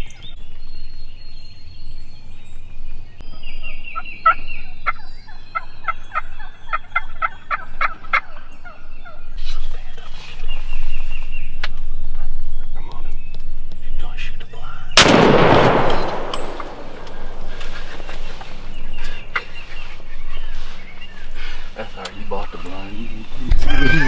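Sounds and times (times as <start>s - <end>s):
wild turkey gobbling: 4.0s - 9.2s, 15.9s - 24.0s.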